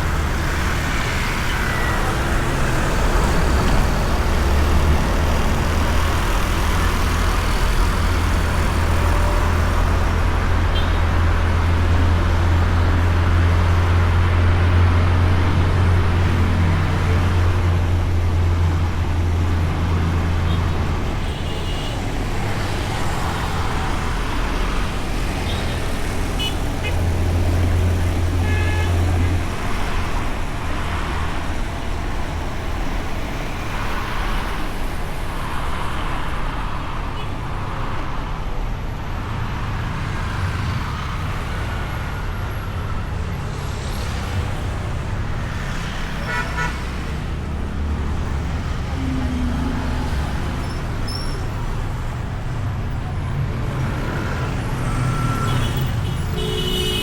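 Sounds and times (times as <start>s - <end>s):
vehicles passing: 0.0s - 57.0s
wind and road noise: 0.0s - 57.0s
horn toots: 28.4s - 29.4s, 54.2s - 57.0s.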